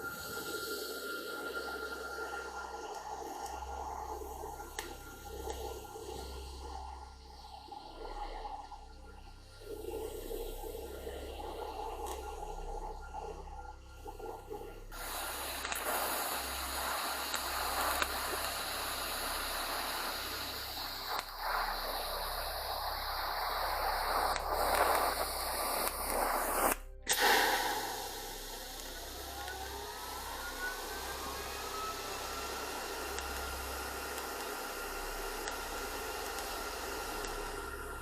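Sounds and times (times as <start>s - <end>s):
welder crackling hiss: 0.0s - 6.8s, 14.9s - 38.0s.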